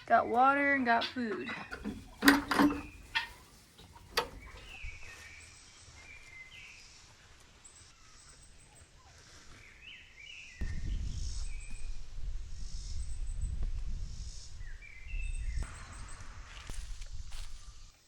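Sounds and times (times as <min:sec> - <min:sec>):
birds chirping faintly: 0:00.0 - 0:10.6
short knocks: 0:01.7 - 0:04.8.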